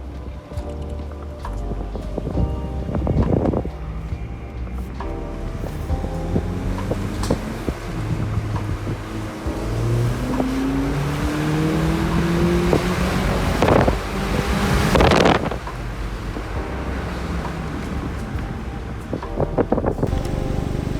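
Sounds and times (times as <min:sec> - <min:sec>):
car engine revving: 0:05.6 - 0:19.1, 0:19.7 - 0:20.9.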